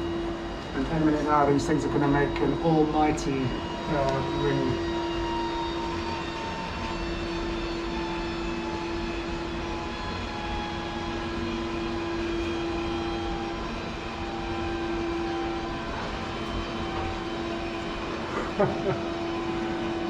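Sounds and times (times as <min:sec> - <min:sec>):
large church bells ringing: 0:00.7 - 0:04.9.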